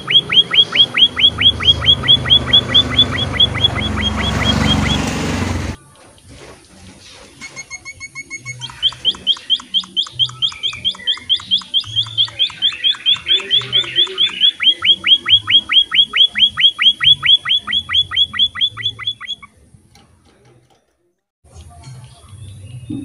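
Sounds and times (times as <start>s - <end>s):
songbird calling: 0.0s - 5.8s, 7.4s - 19.6s.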